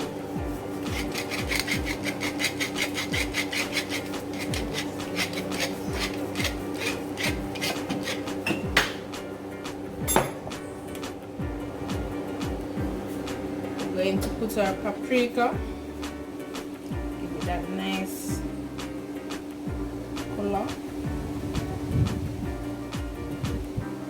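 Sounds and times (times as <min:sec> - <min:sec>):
pepper grinder rasping clicks: 0:01.0 - 0:08.3.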